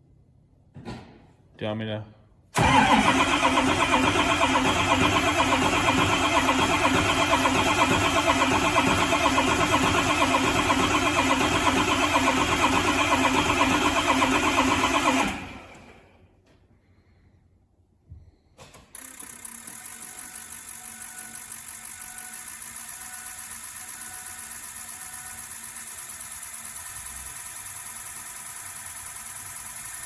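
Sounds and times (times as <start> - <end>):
diesel engine running: 2.6 - 15.8.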